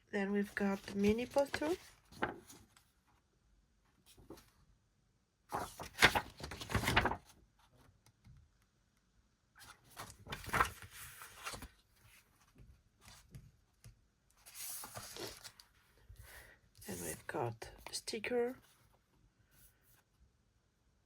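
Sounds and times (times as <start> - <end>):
paper rustling and crinkling: 0.4 - 2.9, 5.5 - 7.4, 9.6 - 13.4, 14.4 - 15.8.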